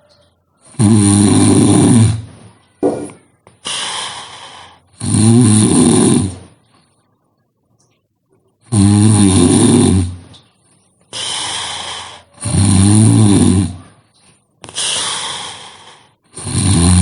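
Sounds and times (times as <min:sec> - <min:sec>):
person snoring: 0:00.6 - 0:06.6, 0:08.7 - 0:10.2, 0:11.1 - 0:14.0, 0:14.7 - 0:17.0.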